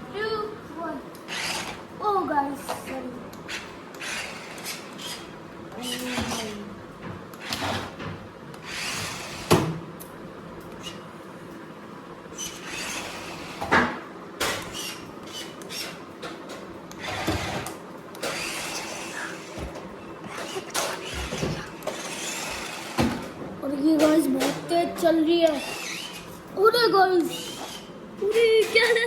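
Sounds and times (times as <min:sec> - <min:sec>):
toy car electric motor whirring: 0:01.3 - 0:01.8, 0:02.7 - 0:06.6, 0:07.4 - 0:08.0, 0:08.6 - 0:09.5, 0:12.4 - 0:13.6, 0:14.6 - 0:16.0, 0:17.0 - 0:19.7, 0:20.3 - 0:23.1, 0:25.4 - 0:29.0.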